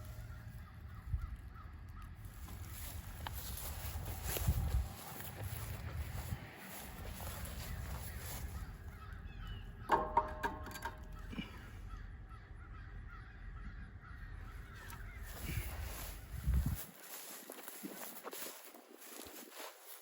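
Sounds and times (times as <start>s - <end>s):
bird harsh calls: 5.6s - 17.4s.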